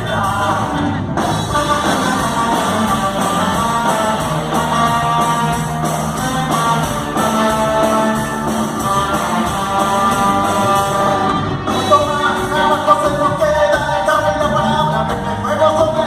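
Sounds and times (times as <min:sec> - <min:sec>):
drum kit beat: 0:00.0 - 0:16.0
guitar: 0:00.0 - 0:16.0
rock band playing: 0:00.0 - 0:16.0.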